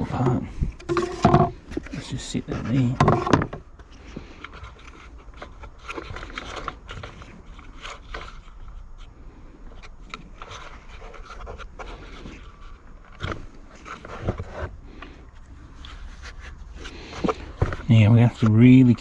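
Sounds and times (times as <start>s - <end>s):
plastic parts clicking and knocking: 0.2s - 2.0s, 2.6s - 8.4s, 17.1s - 18.6s.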